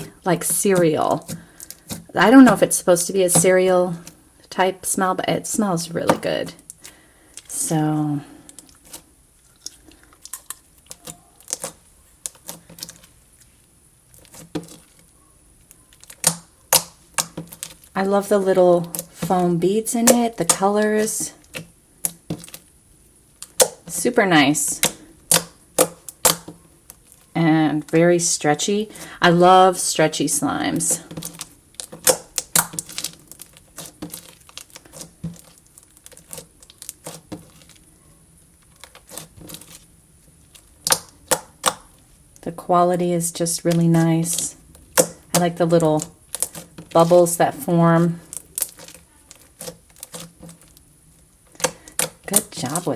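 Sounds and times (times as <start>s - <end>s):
slime crackling and popping: 8.5s - 19.2s, 19.8s - 27.3s, 30.7s - 42.5s, 43.2s - 52.9s.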